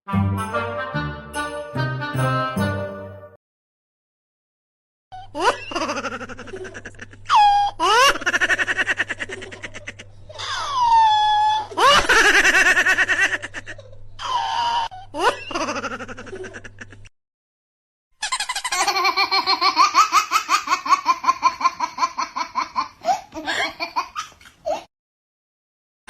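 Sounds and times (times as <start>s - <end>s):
giggling laugh: 5.4s - 10.6s, 15.1s - 17.1s
long ha-ha laugh: 11.7s - 17.1s.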